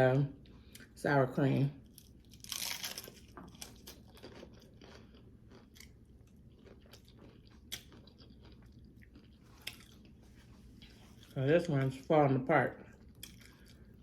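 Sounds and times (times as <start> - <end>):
close-up crunchy chewing: 1.8 - 11.8, 12.8 - 14.0
crunchy bite into taco shell: 1.9 - 10.2.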